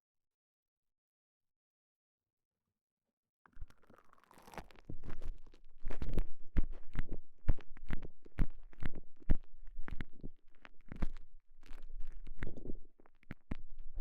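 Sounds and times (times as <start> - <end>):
squishy rubbing against microphone: 3.6 - 14.0.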